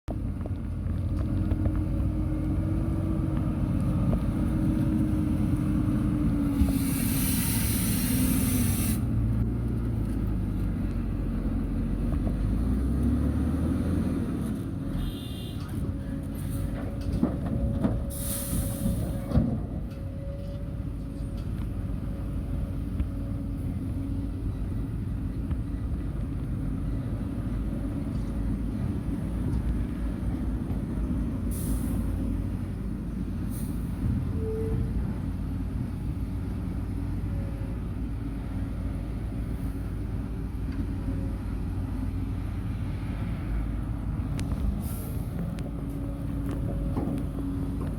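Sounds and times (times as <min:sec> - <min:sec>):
heavy diesel engine droning: 0:00.1 - 0:47.9
hiss: 0:06.5 - 0:09.2, 0:18.1 - 0:19.3, 0:31.5 - 0:32.2.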